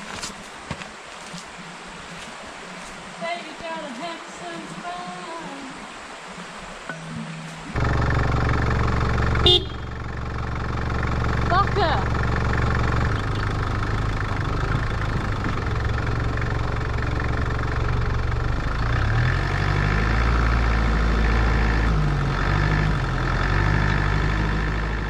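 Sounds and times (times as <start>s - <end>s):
engine running: 7.6s - 25.0s.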